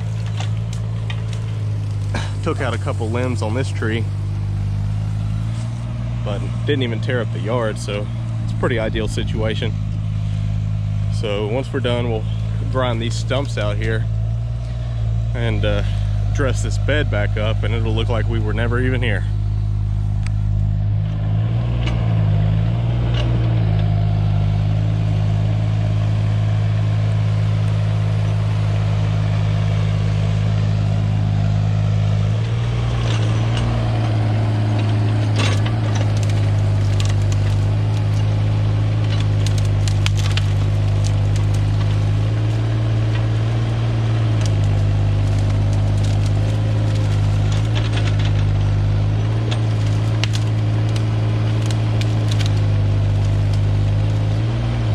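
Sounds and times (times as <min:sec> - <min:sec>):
wood cracking and snapping: 0:00.0 - 0:06.8, 0:27.3 - 0:54.9
excavator engine running: 0:00.0 - 0:54.9.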